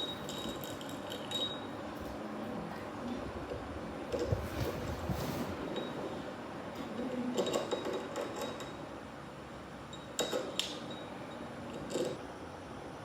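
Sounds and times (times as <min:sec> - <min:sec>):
steady background noise: 0:00.0 - 0:13.0.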